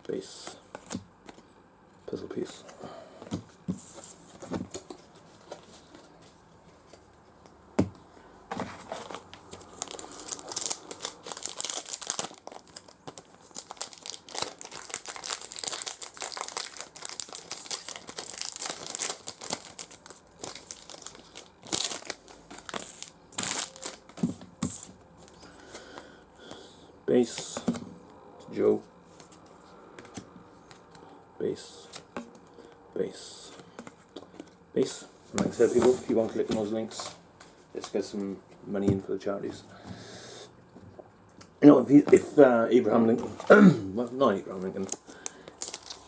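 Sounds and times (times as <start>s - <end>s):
wrapper crinkling: 8.9s - 24.3s, 44.7s - 46.0s
wrapper tearing: 9.0s - 24.2s, 44.8s - 46.0s.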